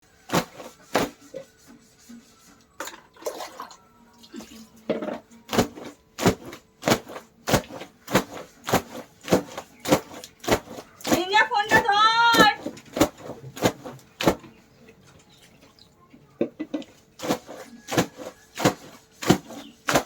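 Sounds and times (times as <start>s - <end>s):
clothes splashing in hand washing: 0.2s - 1.5s, 2.8s - 4.8s, 5.5s - 15.8s, 16.8s - 20.0s.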